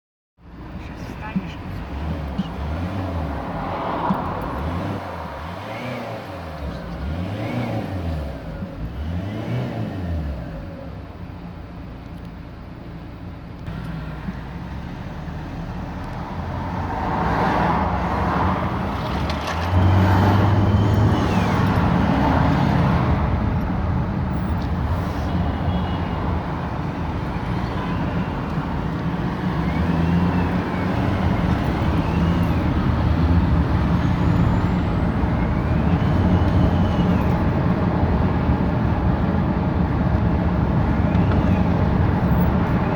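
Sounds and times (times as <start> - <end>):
car engine rumble: 0.4 - 42.9.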